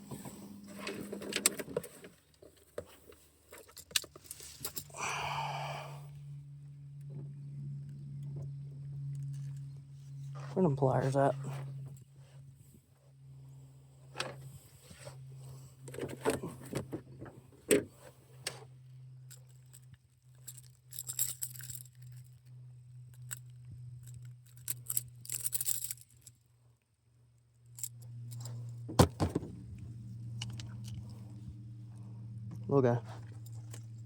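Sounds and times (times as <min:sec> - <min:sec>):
steady low hum: 0:00.0 - 0:34.0
metal tackle jangling: 0:19.3 - 0:22.4, 0:23.1 - 0:26.4.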